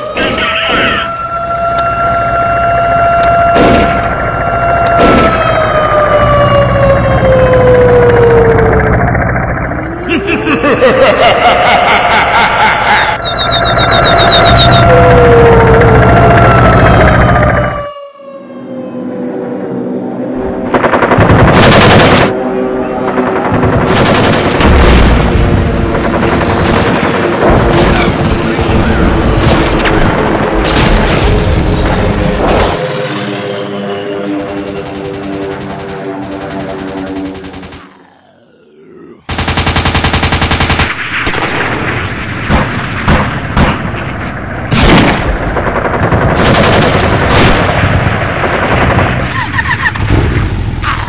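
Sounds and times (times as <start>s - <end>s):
steady humming drone: 0.0s - 43.0s
machine-gun fire: 20.7s - 22.3s, 23.5s - 28.2s, 39.3s - 44.0s, 44.7s - 49.3s.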